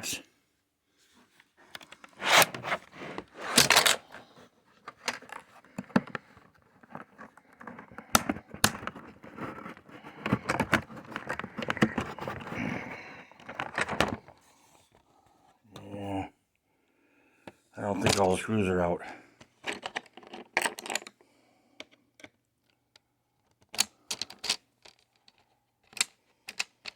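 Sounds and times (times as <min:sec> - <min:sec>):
tools clicking on plastic case: 0:01.8 - 0:04.1, 0:04.8 - 0:14.3
loud scraping rustles: 0:02.1 - 0:04.3.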